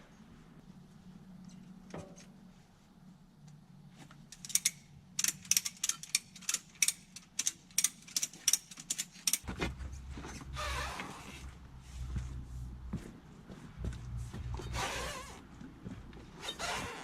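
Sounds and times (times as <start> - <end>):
sharp metallic clicks: 4.3 - 9.5
low engine hum: 9.4 - 16.8.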